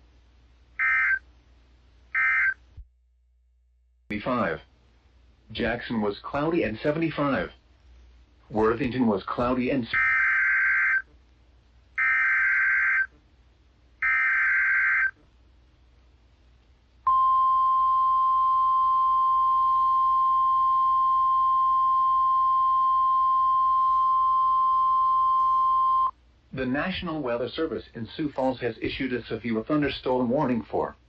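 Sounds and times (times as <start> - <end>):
steady warning alarm tone: 0.8 - 1.2, 2.2 - 2.6, 10.0 - 11.0, 12.0 - 13.1, 14.0 - 15.2, 17.1 - 26.1.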